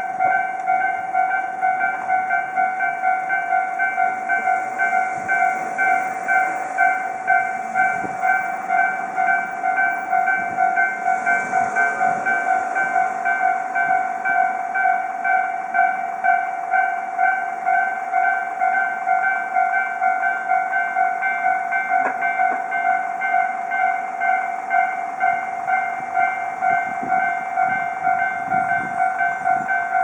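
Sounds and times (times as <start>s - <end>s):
level crossing bell ringing: 0.0s - 30.0s
train passing: 0.0s - 30.0s.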